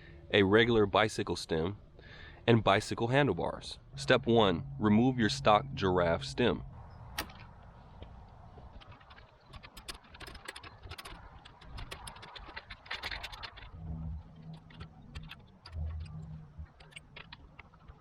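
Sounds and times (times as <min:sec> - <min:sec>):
allen wrench clicking on bolts: 0:09.5 - 0:13.8, 0:14.4 - 0:17.9.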